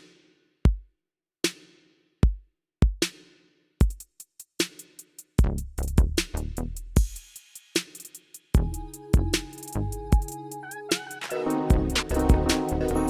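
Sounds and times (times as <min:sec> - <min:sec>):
kick drums: 0:00.6 - 0:00.9, 0:02.2 - 0:03.1, 0:03.8 - 0:04.1, 0:08.6 - 0:09.3, 0:10.0 - 0:10.3, 0:11.7 - 0:12.7
fast hi-hat ticks: 0:03.8 - 0:08.7, 0:09.4 - 0:10.5
heavy bass: 0:05.4 - 0:07.0, 0:08.6 - 0:10.2, 0:11.7 - 0:13.0.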